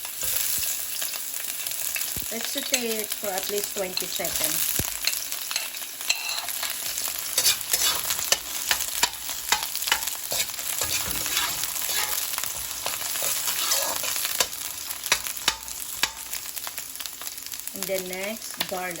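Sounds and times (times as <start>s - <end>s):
onion sizzling in oil: 0.0s - 19.0s
utensil scraping a wok: 2.5s - 16.8s.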